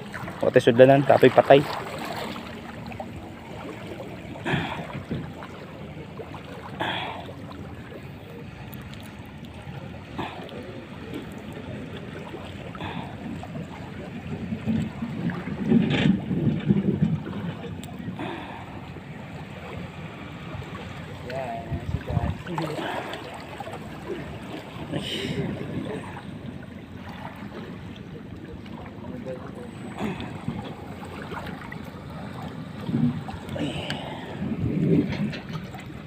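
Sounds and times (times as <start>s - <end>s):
moving water: 0.0s - 36.0s
wind buffeting microphone: 12.8s - 26.4s, 30.1s - 36.0s.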